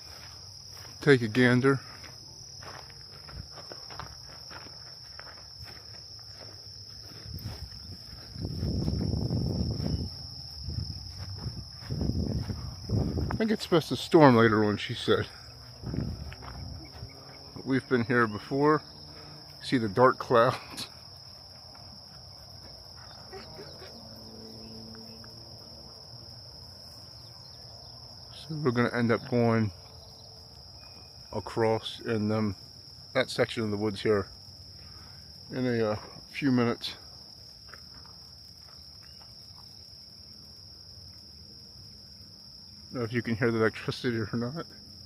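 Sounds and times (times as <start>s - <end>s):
faint low hum: 0.0s - 32.8s
crickets chirping: 0.0s - 45.0s
low rumbling on microphone: 7.1s - 13.4s, 15.2s - 17.7s.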